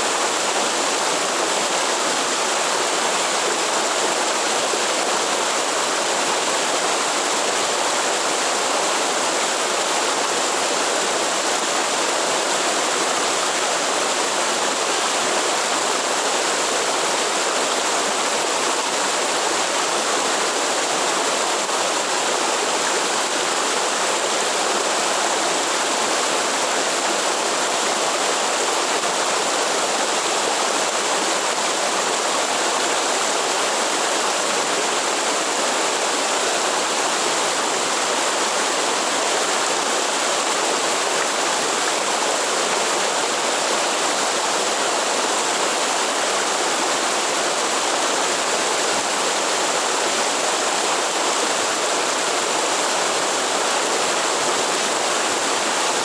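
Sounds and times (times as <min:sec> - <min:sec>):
waterfall splashing: 0:30.0 - 0:56.0.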